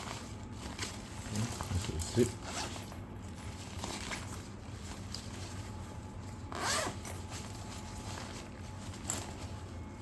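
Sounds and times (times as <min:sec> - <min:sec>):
bag handling noise: 0:00.0 - 0:10.0
zipper on a bag: 0:02.2 - 0:02.9, 0:06.4 - 0:08.1.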